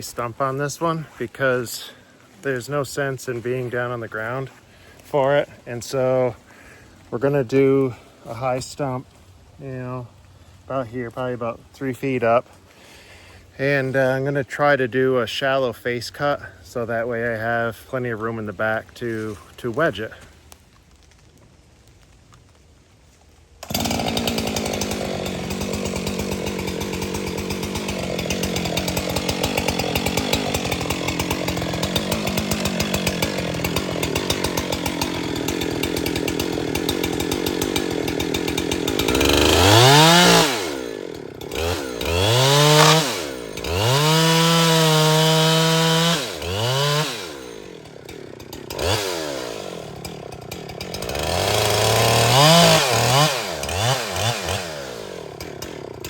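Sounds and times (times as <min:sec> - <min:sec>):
chainsaw cutting wood: 0:00.0 - 0:10.0, 0:23.6 - 0:56.0
chainsaw revving: 0:23.6 - 0:56.0.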